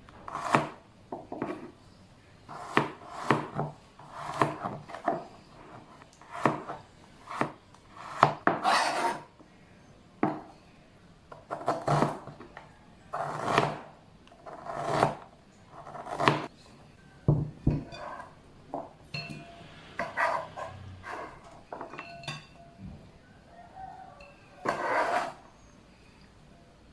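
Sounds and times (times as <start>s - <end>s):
knife cutting on wooden board: 0.3s - 0.8s, 2.5s - 9.3s, 13.2s - 13.8s, 14.5s - 15.2s, 15.8s - 16.5s, 20.0s - 21.5s, 24.6s - 25.4s.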